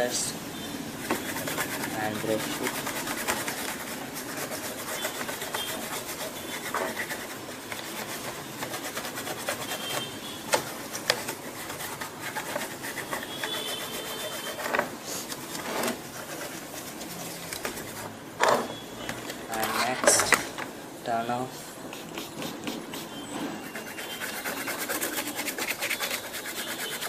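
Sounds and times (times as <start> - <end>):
toothbrush scrubbing circuit board: 1.1 - 14.7, 16.1 - 18.1, 21.9 - 27.0.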